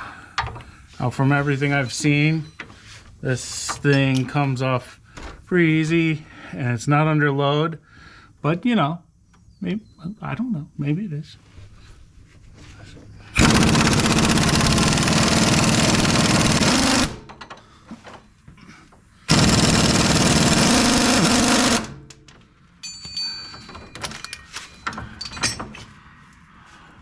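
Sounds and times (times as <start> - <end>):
light metallic clinks and rattles: 3.5 - 4.5, 22.0 - 26.2
impact wrench hammering: 19.3 - 22.2.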